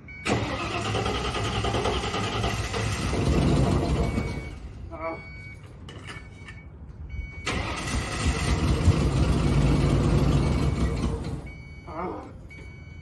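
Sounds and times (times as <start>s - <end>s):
pickup engine cranking: 0.2s - 4.6s, 7.4s - 11.6s.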